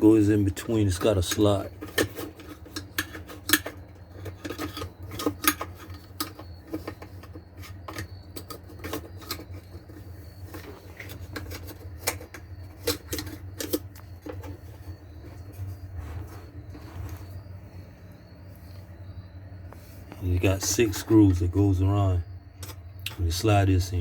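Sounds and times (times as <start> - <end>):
steady low hum: 0.0 - 24.0
plastic and metal parts clicking: 0.9 - 14.8.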